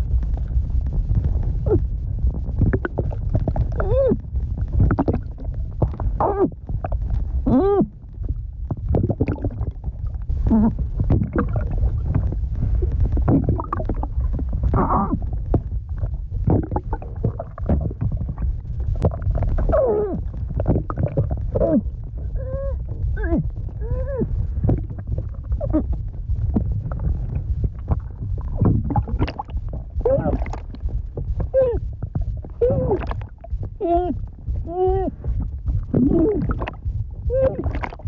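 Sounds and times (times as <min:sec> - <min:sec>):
low underwater rumble: 0:00.0 - 0:38.0
water bubbling: 0:00.0 - 0:38.0
muffled vocal moans: 0:01.6 - 0:01.9, 0:03.5 - 0:05.3, 0:06.0 - 0:06.8, 0:07.4 - 0:08.0, 0:10.4 - 0:11.6, 0:12.7 - 0:15.4, 0:19.0 - 0:26.0, 0:27.9 - 0:30.8, 0:31.4 - 0:38.0.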